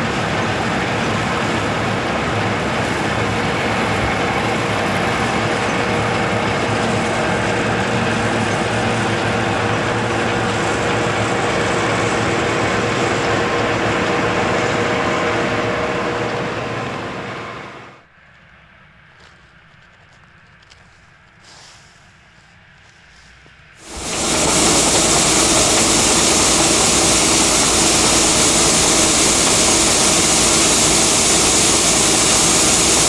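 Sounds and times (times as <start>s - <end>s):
combine harvester running: 0.0s - 18.0s, 23.8s - 33.0s.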